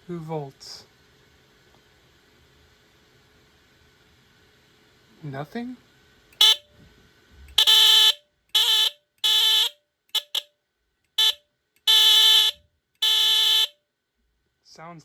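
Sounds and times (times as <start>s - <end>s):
smoke detector alarm blasts: 6.4s - 6.7s, 7.6s - 10.5s, 11.2s - 13.8s.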